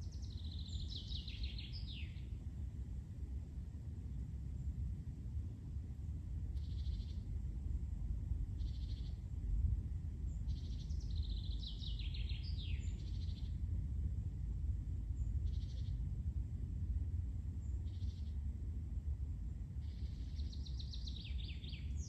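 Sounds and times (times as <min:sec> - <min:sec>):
steady low rumble: 0:00.0 - 0:22.0
complex birdsong falling in pitch: 0:10.5 - 0:13.5.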